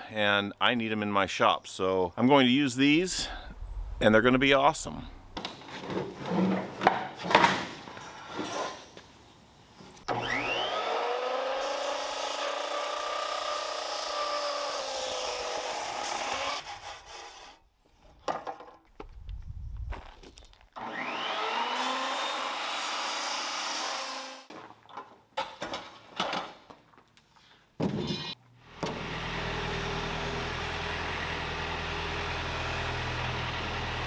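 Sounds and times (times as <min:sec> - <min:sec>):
power tool cutting wood: 0:10.1 - 0:17.6, 0:20.8 - 0:24.5, 0:28.7 - 0:34.0.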